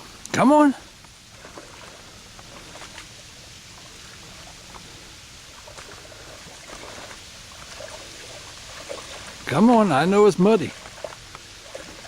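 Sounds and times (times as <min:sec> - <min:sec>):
trickling water: 0:00.0 - 0:12.0
dog splashing in water: 0:05.6 - 0:12.0.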